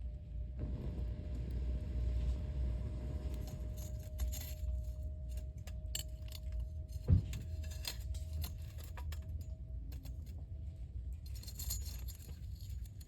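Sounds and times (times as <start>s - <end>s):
low rumble: 0.0s - 13.0s.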